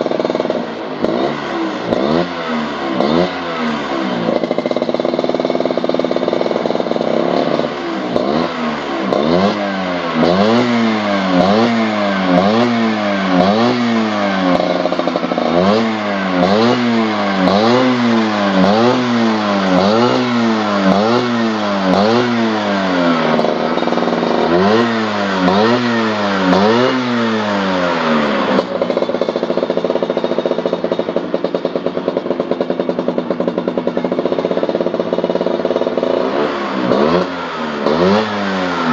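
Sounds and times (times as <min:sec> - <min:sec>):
motorcycle engine idling: 0:00.0 - 0:38.9
motorcycle engine revving: 0:00.0 - 0:38.9.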